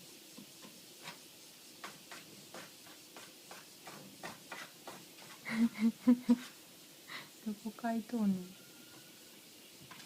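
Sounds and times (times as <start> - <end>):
cat scratching litter: 0.6 - 6.6
person's voice: 7.5 - 8.5.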